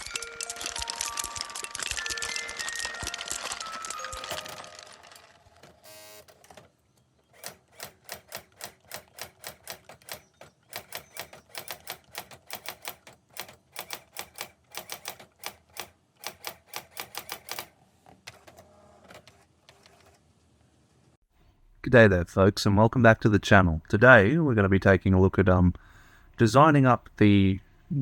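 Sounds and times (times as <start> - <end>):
typewriter key strikes: 7.4 - 17.7.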